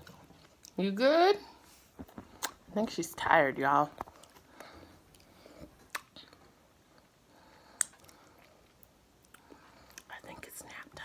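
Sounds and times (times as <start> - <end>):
person chewing food: 2.0 - 2.6, 4.0 - 10.1.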